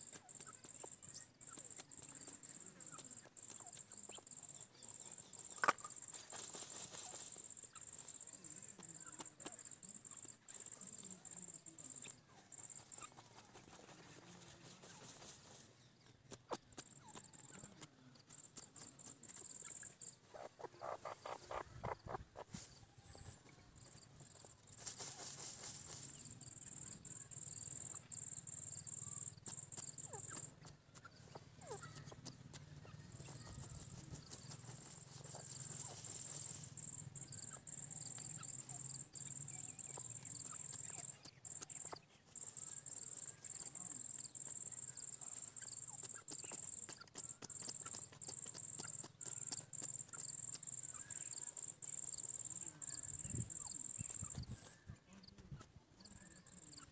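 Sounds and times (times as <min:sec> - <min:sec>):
high-pitched insect trill: 0:00.0 - 0:15.6, 0:16.8 - 0:54.9, 0:56.0 - 0:56.9
faint clicks: 0:22.7 - 0:56.9.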